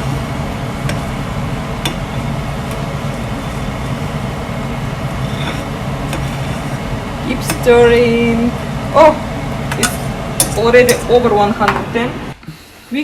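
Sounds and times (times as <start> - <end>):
kitchen appliance motor hum: 0.0 - 12.4
utensil clicking against pot: 7.4 - 7.8.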